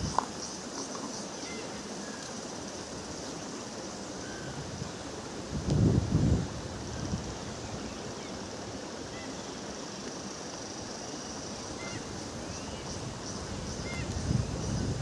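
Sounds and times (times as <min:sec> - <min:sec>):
wind buffeting microphone: 0:04.4 - 0:07.9, 0:12.1 - 0:15.0.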